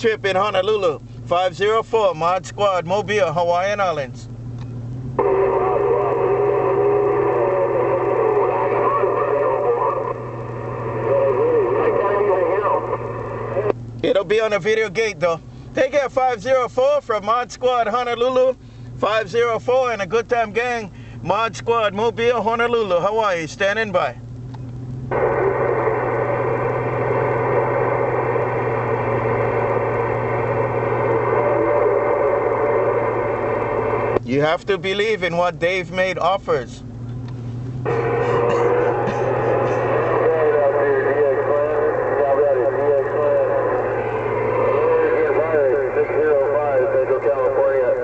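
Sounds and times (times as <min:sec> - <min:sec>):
low hum: 0:00.0 - 0:48.0
steady radio whistle: 0:05.2 - 0:13.8, 0:25.1 - 0:34.2, 0:37.8 - 0:48.0
radio static hiss: 0:05.2 - 0:21.4, 0:22.0 - 0:48.0.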